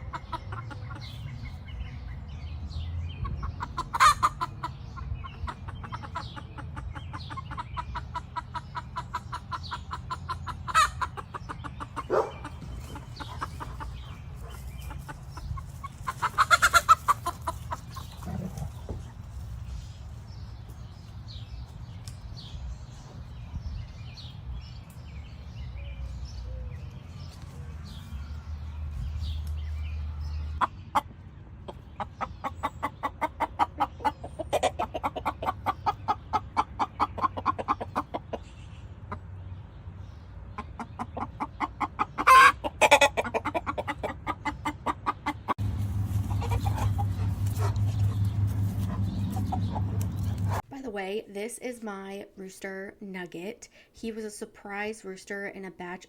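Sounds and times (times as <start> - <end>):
hens rapid warning clucks: 0.0 - 1.6, 3.2 - 19.9, 30.5 - 39.4, 40.4 - 50.6.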